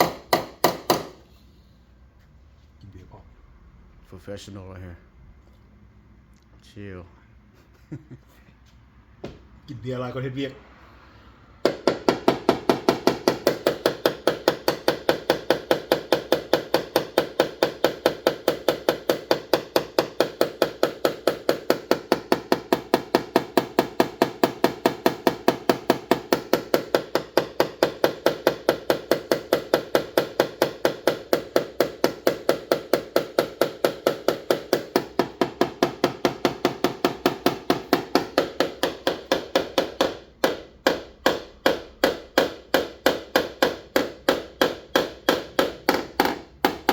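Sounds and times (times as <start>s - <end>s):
hammer tapping on metal: 0.0s - 1.2s, 11.6s - 46.9s.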